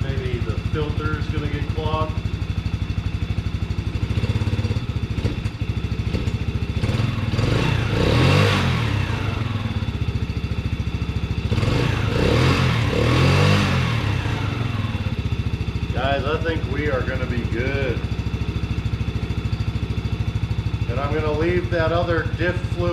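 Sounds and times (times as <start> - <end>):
engine idling and revving: 0.0 - 22.9.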